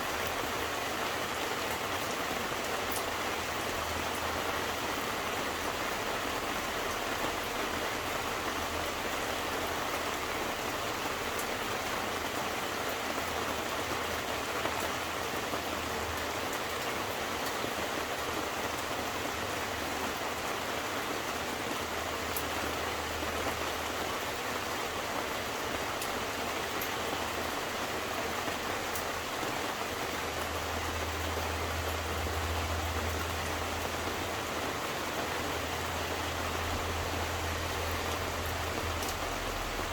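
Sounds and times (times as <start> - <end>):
rain pattering on surfaces: 0.0 - 39.9.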